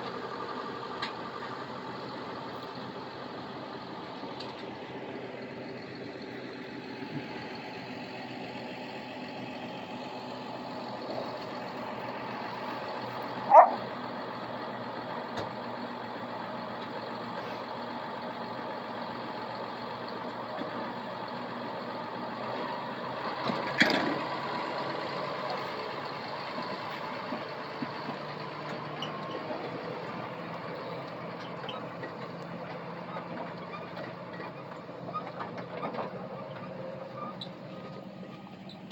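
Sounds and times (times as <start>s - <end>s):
farm machinery engine running: 0.0s - 38.9s.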